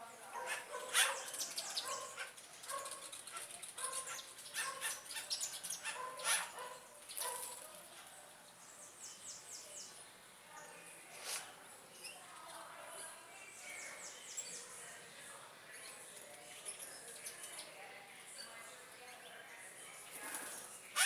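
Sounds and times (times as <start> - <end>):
birds calling and chirping: 0.2 - 7.5.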